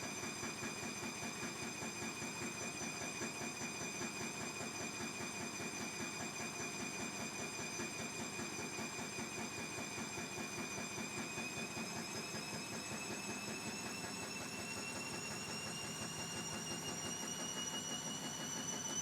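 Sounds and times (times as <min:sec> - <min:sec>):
washing machine spinning up: 0:00.0 - 0:19.0
motor whine rising in pitch: 0:07.7 - 0:19.0.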